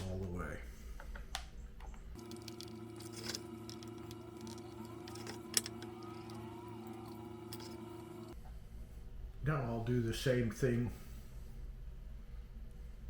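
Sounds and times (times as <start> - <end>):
low hum: 1.6 - 9.4.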